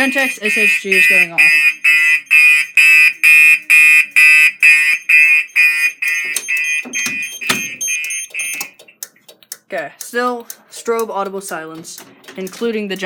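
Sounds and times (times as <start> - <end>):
fire alarm pulsing buzzy tone: 0.0 - 8.9.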